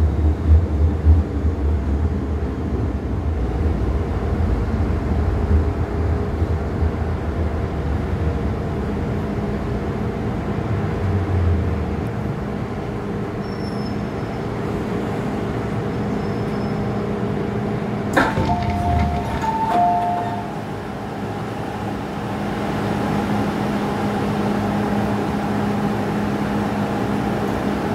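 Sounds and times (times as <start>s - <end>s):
train rumbling: 0.0s - 27.9s
two-note electronic tone: 18.4s - 20.6s.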